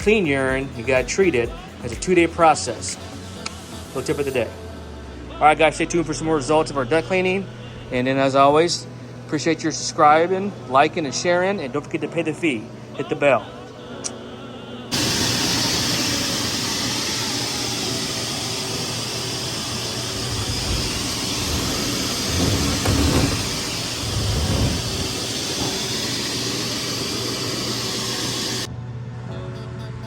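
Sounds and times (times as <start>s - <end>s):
constant low hum: 2.9s - 30.0s
airy rush of duct cleaner: 14.9s - 28.7s
heavy rumbles: 19.8s - 26.2s.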